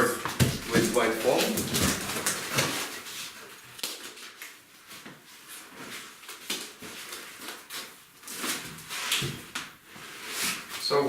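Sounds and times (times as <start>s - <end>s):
foam and cardboard scraping: 6.8s - 11.0s.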